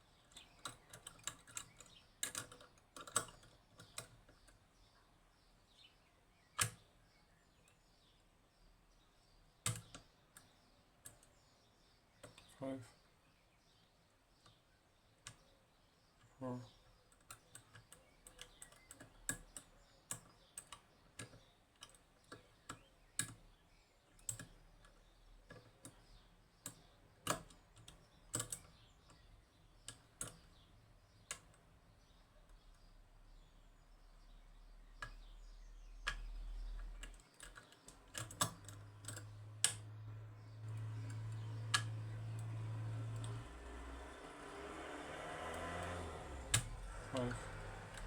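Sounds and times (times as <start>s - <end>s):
lock-picking tools clicking: 0.2s - 4.6s, 9.7s - 11.4s, 17.1s - 23.5s, 24.1s - 30.6s, 36.0s - 43.5s, 45.5s - 48.0s.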